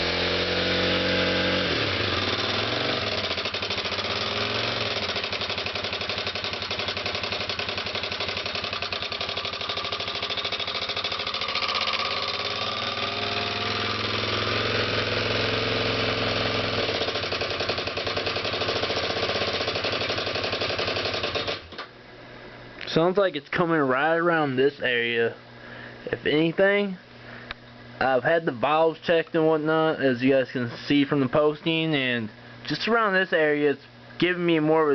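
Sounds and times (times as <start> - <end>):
motorcycle engine idling roughly: 0.0 - 21.7.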